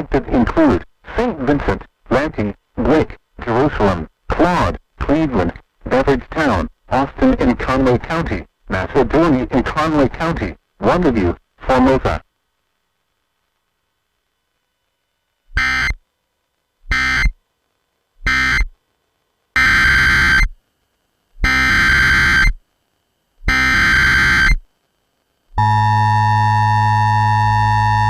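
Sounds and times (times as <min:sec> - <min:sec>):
buzzing digital data bursts: 0:15.5 - 0:16.0, 0:16.9 - 0:17.4, 0:18.2 - 0:18.8, 0:19.6 - 0:20.6, 0:21.4 - 0:22.6, 0:23.4 - 0:24.6
emergency alert attention tone: 0:16.9 - 0:17.3, 0:19.6 - 0:20.5, 0:21.4 - 0:22.6, 0:23.5 - 0:24.6.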